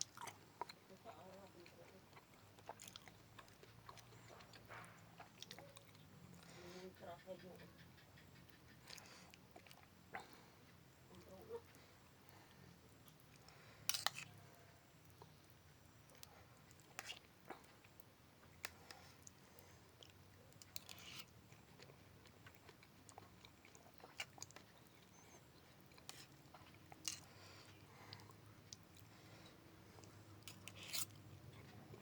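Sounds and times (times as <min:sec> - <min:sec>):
person chewing and biting: 0:00.0 - 0:00.8, 0:02.2 - 0:06.0, 0:13.9 - 0:14.3, 0:20.0 - 0:29.1, 0:30.0 - 0:31.7.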